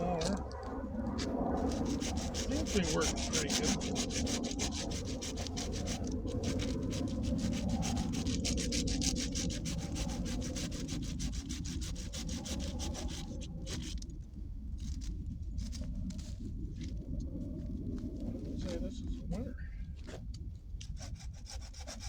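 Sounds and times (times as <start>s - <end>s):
hand saw cutting wood: 1.2s - 14.0s, 20.8s - 22.0s.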